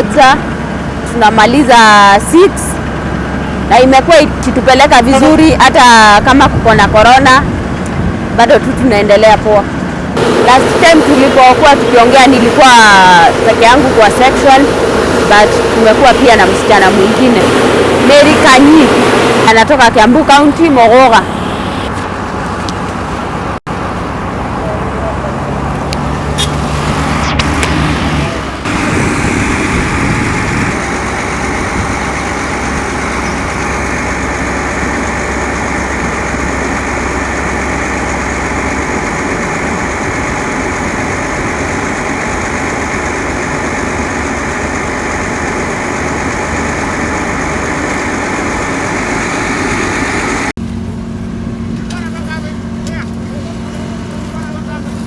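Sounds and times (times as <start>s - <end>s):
engines running steadily: 0.0s - 55.0s
road-works noise: 0.0s - 55.0s.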